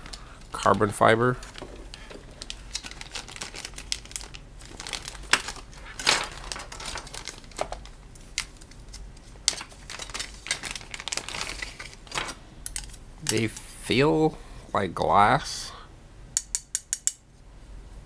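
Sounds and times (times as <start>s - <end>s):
plastic crinkling: 0.0s - 12.4s.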